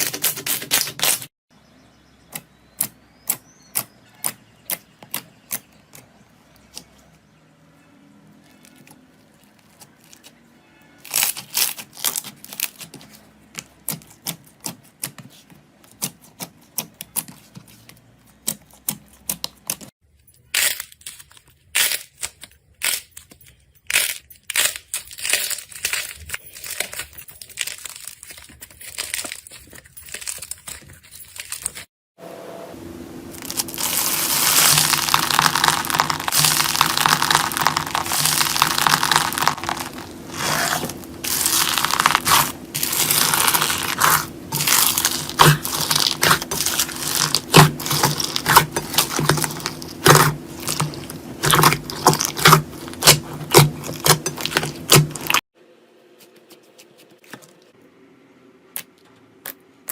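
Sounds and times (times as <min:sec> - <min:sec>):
slime popping and crackling: 0:33.4 - 0:55.4.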